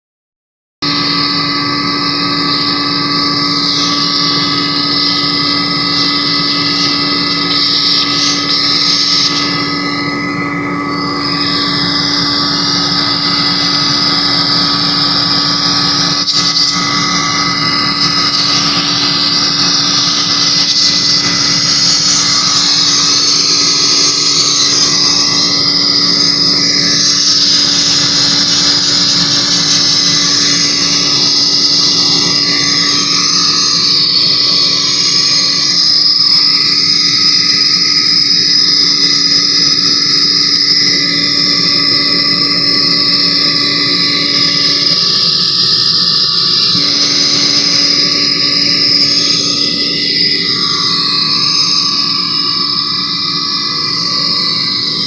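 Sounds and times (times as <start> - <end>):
air compressor running: 0.8 - 55.0.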